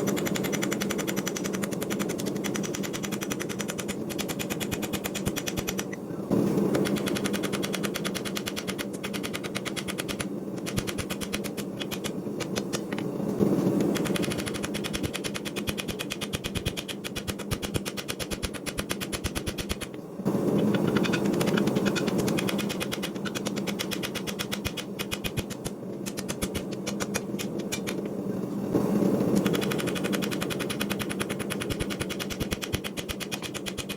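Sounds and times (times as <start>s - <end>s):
steady hum: 0.0s - 33.9s
rapid evenly spaced strikes: 6.7s - 13.0s, 13.8s - 28.0s, 29.4s - 33.9s.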